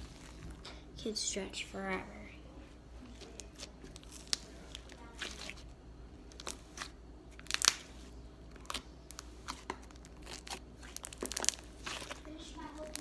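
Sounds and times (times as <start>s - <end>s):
slime squished by hand: 3.1s - 13.0s.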